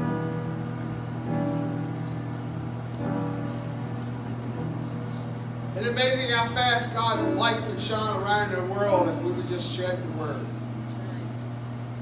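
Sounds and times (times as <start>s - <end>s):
soft instrumental music: 0.0s - 9.6s.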